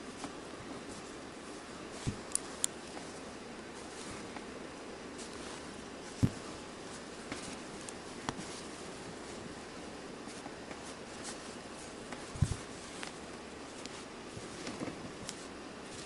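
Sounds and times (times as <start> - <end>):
soft thump: 6.2 - 6.4.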